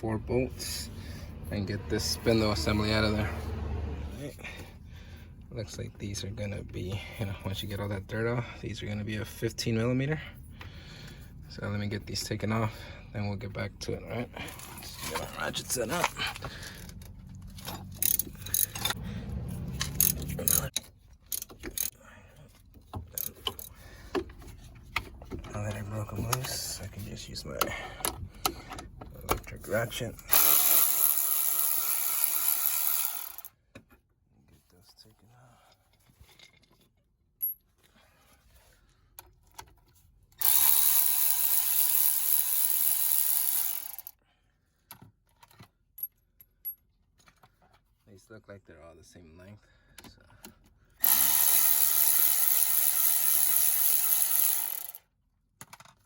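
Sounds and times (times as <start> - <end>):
tool handling clicks: 16.7 - 19.0, 19.6 - 21.9
hand ratchet clicking: 17.9 - 19.0, 19.7 - 21.9, 30.3 - 33.5, 40.4 - 44.1, 51.0 - 55.0.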